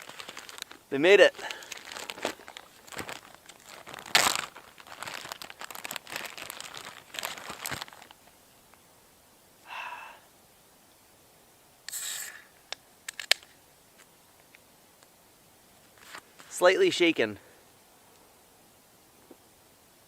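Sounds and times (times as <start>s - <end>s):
plastic bag crinkling: 0.0s - 8.2s
beer can opening hiss: 11.8s - 13.5s.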